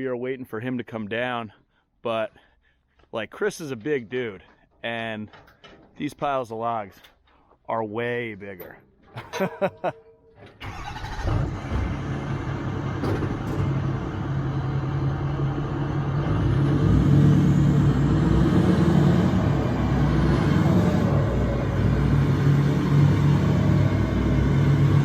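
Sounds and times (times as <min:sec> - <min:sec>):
engine humming: 0:09.3 - 0:25.0.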